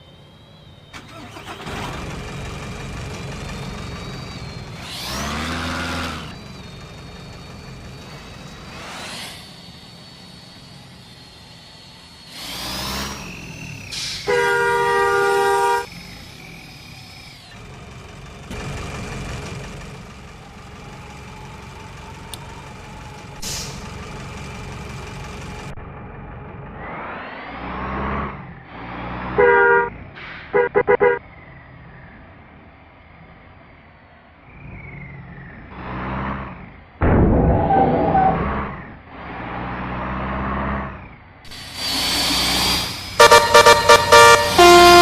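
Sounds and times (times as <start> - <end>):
bus engine running: 0.0 - 45.0
air brake hisses: 13.8 - 14.5, 23.4 - 23.9
multi-tone horn blast: 14.2 - 15.9, 29.4 - 29.9, 30.5 - 31.2, 43.2 - 45.0.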